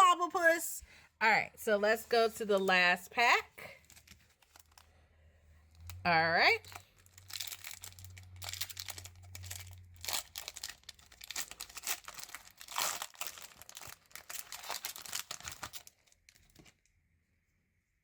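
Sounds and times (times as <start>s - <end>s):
foil wrapper crinkling and tearing: 3.8s - 4.9s, 6.6s - 16.8s.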